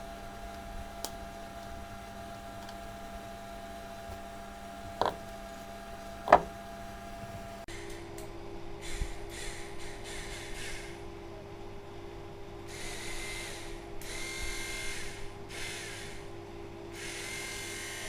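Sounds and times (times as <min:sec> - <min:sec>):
cooling fan motor humming: 0:00.0 - 0:07.7.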